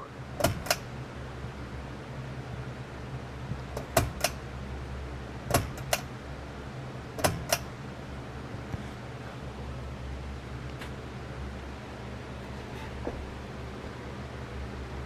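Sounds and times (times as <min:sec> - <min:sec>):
ceiling fan motor hum: 0:00.0 - 0:15.0
sharp clicks: 0:00.4 - 0:00.9, 0:03.8 - 0:04.4, 0:05.5 - 0:06.1, 0:07.2 - 0:07.7.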